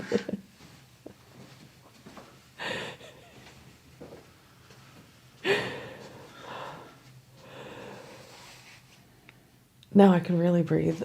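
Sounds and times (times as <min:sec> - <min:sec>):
woman breathing deeply: 0:02.6 - 0:03.4, 0:05.4 - 0:09.6.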